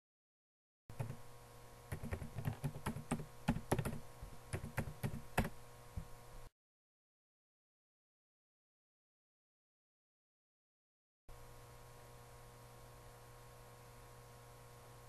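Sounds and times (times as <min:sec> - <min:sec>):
computer keyboard typing: 0:00.9 - 0:01.2, 0:01.9 - 0:05.6
electrical hum: 0:00.9 - 0:06.5, 0:11.3 - 0:15.0.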